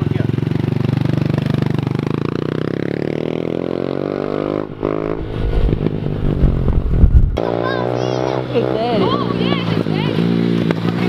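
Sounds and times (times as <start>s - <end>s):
dirt bike engine revving: 0.0s - 11.0s
low uneven rumble with thumps: 5.1s - 7.4s.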